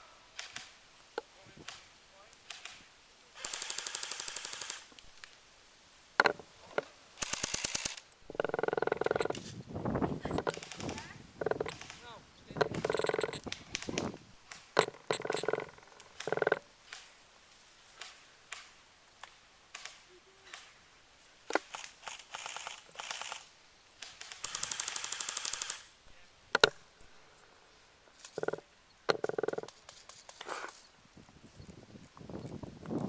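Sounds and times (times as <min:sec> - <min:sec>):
airsoft gun full-auto burst: 0:03.4 - 0:04.9, 0:07.2 - 0:08.0, 0:21.7 - 0:23.4, 0:24.3 - 0:25.9.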